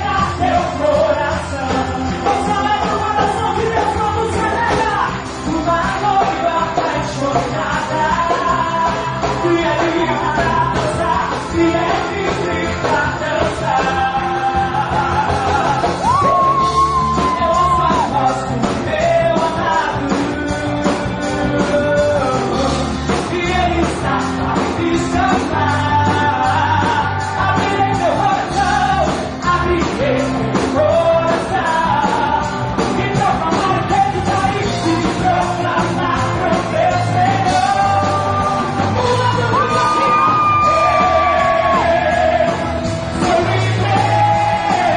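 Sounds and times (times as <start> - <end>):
band with drums playing: 0.0 - 44.9
voices singing and shouting: 0.0 - 44.9
people yelling: 39.4 - 42.7.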